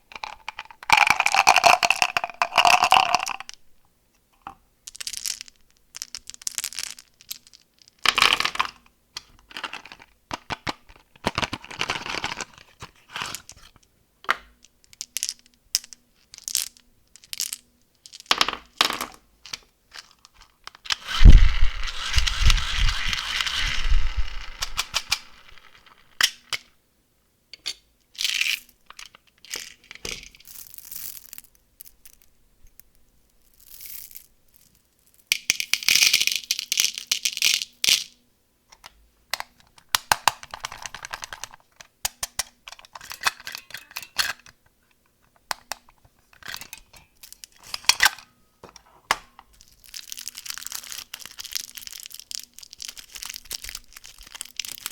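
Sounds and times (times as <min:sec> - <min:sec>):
plastic wrappers crinkling: 0:49.5 - 0:54.9.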